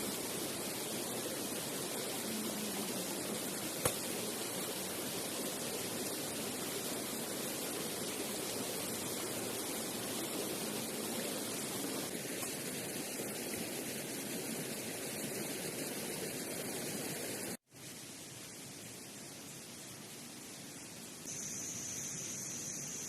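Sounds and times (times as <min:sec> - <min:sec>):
flowing water rushing: 0:00.0 - 0:17.6.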